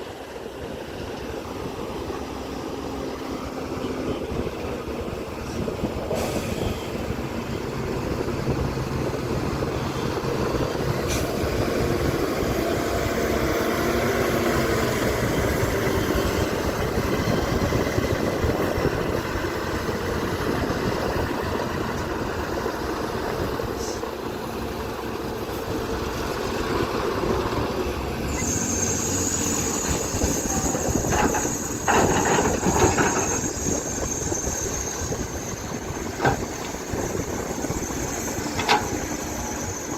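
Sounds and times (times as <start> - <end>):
excavator engine and hydraulics: 0.0 - 39.9
high steady squeal: 28.1 - 39.9.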